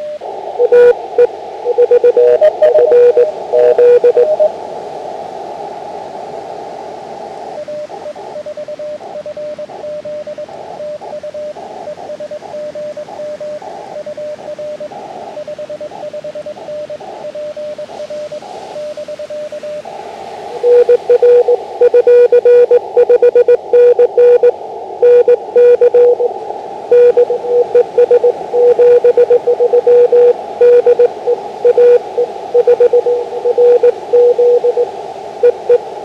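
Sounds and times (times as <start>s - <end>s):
weak higher-pitched morse tone: 0.0s - 4.5s, 20.6s - 35.9s
receiver hiss: 0.0s - 36.0s
morse code sidetone keying: 0.6s - 4.5s, 20.6s - 35.8s.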